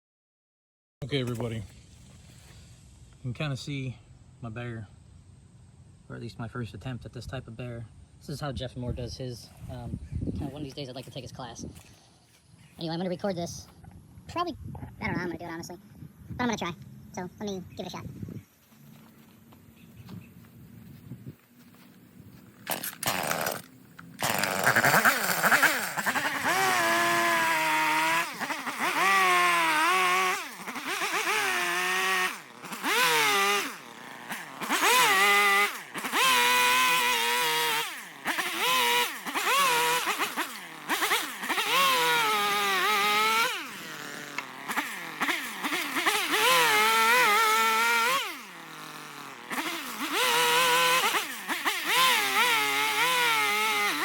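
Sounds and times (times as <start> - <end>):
chainsaw revving and cutting wood: 22.5 - 54.0.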